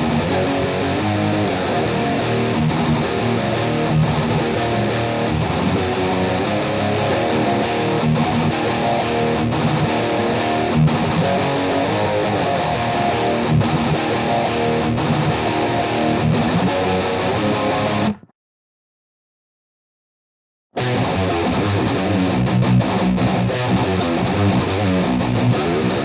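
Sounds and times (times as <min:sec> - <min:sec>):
distorted electric guitar riff: 0:00.0 - 0:18.3, 0:20.8 - 0:26.0.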